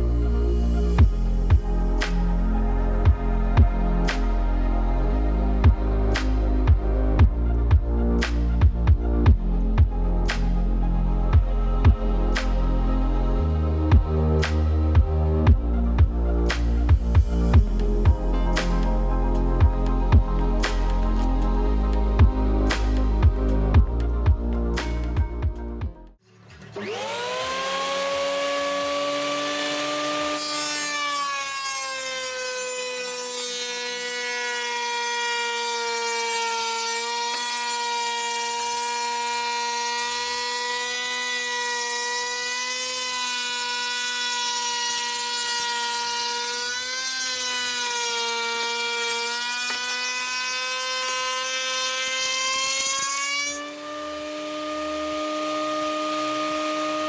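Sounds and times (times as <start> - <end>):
router whining: 26.3 - 57.0.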